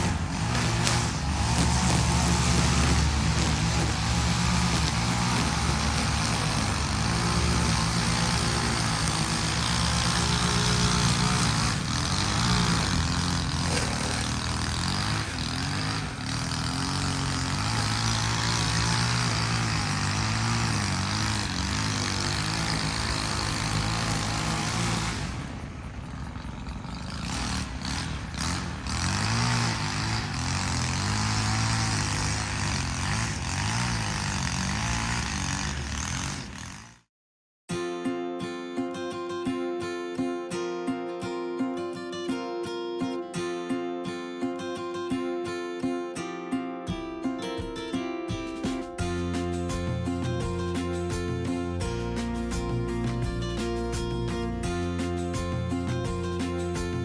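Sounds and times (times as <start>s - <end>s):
string trimmer engine revving: 0.0s - 37.1s, 49.0s - 57.0s.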